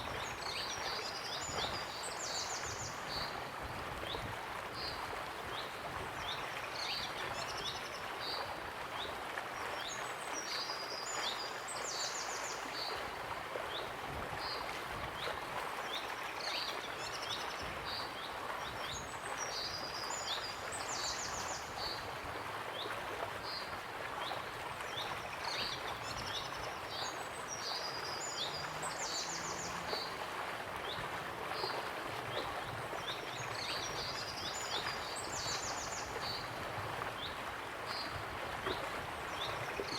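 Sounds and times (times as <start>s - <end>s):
waterfall rushing: 27.0s - 30.7s.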